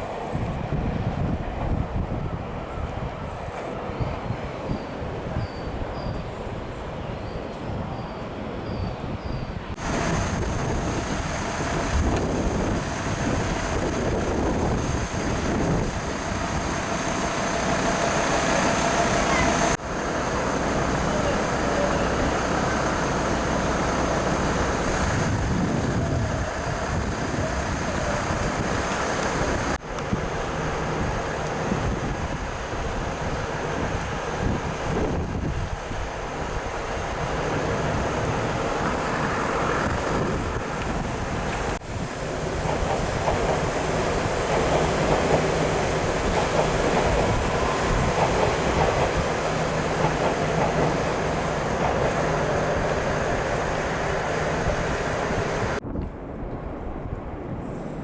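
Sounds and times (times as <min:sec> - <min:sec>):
wind on microphone: 0:00.0 - 0:06.8, 0:07.6 - 0:19.7, 0:23.8 - 0:58.0
rail traffic noise: 0:00.0 - 0:58.0
road traffic noise: 0:09.7 - 0:55.8.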